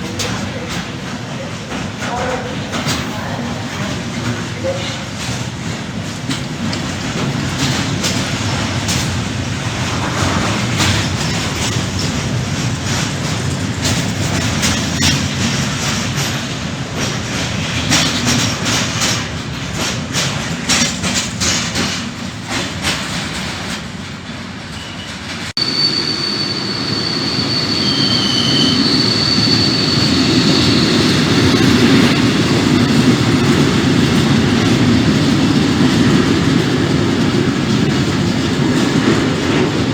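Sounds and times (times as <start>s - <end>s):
wheels clicking over rail joints: 0.0s - 25.5s
train rumble: 0.0s - 39.9s
high wheel squeal: 14.3s - 15.7s, 24.7s - 33.1s.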